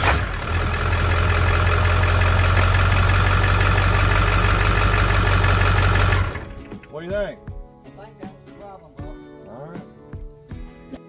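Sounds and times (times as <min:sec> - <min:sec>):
diesel engine idling: 0:00.0 - 0:06.5.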